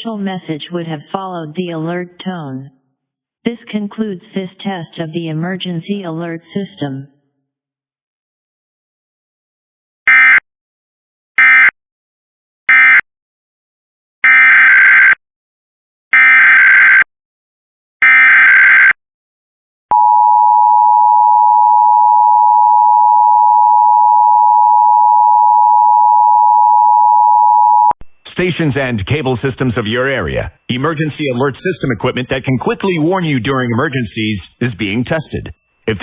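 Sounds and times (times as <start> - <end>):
loud steady attention tone: 19.9 - 32.1.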